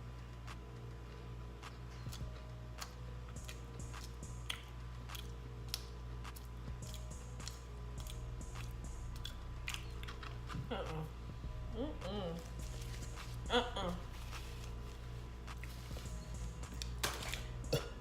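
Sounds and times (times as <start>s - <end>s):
person chewing: 1.6s - 10.7s.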